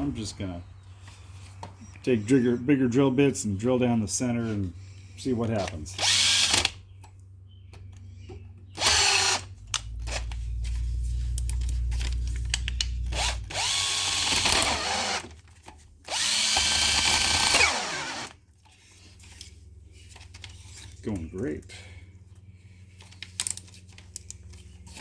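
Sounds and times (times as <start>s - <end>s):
electric drill drilling metal: 6.0s - 6.8s, 8.8s - 9.5s, 13.1s - 15.4s, 16.1s - 18.4s.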